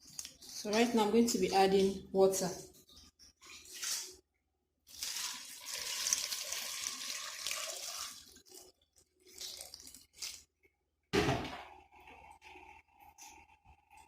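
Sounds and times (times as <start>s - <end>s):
water running into a pot: 4.9s - 10.5s.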